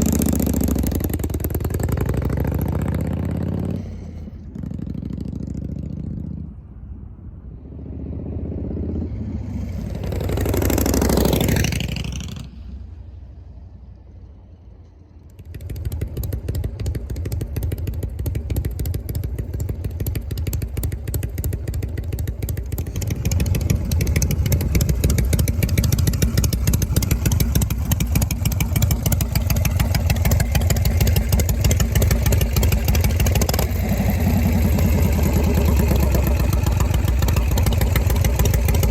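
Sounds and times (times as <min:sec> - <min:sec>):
motorcycle exhaust deep pulsing: 0:00.0 - 0:06.8, 0:15.2 - 0:38.9
vehicle passing: 0:00.0 - 0:15.5.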